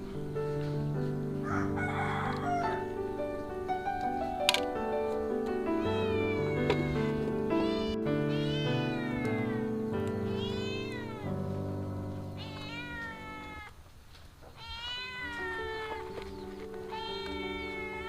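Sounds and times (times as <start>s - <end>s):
background music with sustained chords: 0.0s - 13.6s
cat meowing: 5.7s - 13.8s, 14.4s - 18.0s.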